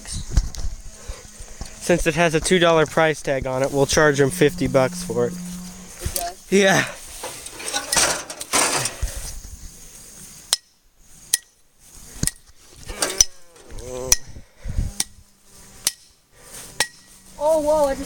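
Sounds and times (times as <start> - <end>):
metal scraping and rattling: 7.1 - 9.0.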